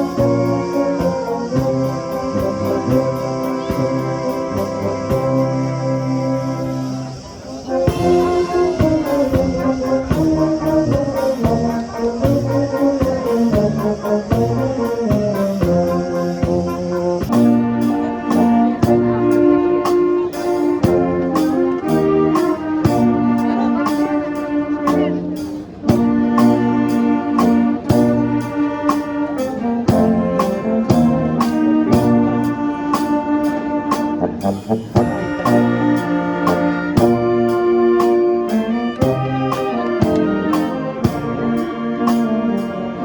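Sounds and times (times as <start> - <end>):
brass music with steady beat: 0.0 - 43.0.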